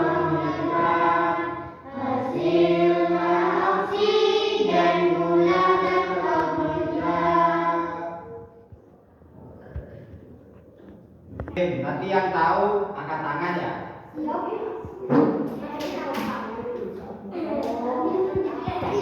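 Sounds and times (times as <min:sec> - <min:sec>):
choir-like voices singing: 0:00.0 - 0:08.5.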